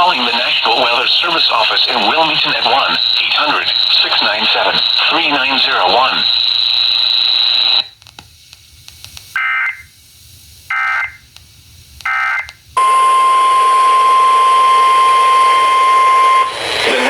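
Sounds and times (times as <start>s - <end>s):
warbling data bursts: 0.0s - 7.8s
steady warning alarm tone: 0.0s - 7.9s, 10.7s - 11.2s, 12.1s - 17.0s
radio hiss: 0.0s - 12.4s.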